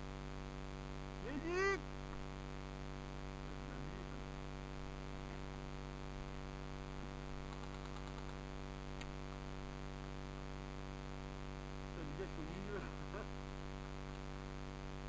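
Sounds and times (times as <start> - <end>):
electrical hum: 0.0 - 15.0
static hiss: 0.0 - 15.0
faint ticks: 7.5 - 8.4, 9.0 - 9.4.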